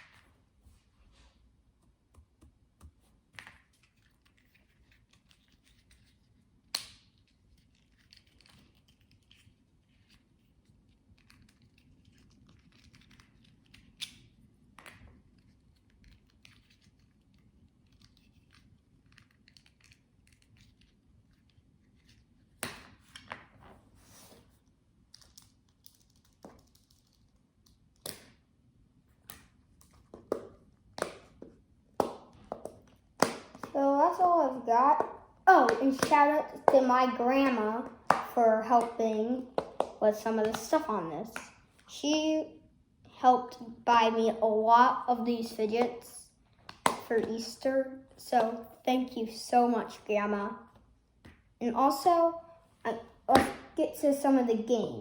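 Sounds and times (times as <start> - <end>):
fidget toys rustling and crinkling: 3.6 - 28.0.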